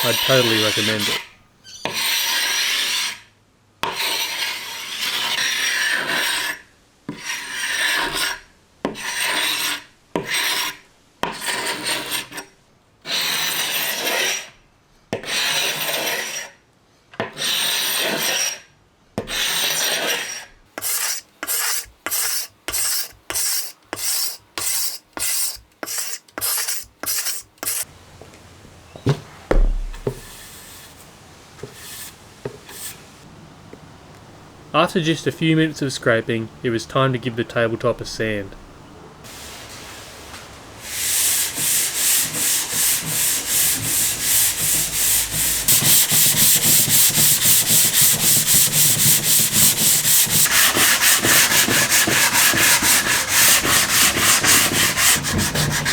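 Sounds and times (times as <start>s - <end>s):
hand scraper scraping wood: 0.0s - 3.2s, 3.8s - 14.5s, 15.2s - 16.5s, 17.3s - 18.6s, 19.2s - 27.9s, 29.0s - 33.0s, 40.8s - 55.9s
low thump: 29.0s - 30.3s.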